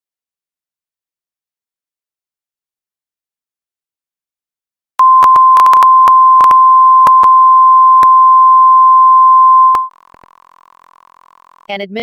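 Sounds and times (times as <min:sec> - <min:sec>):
crackling clicks: 0:05.2 - 0:07.4, 0:09.7 - 0:12.0.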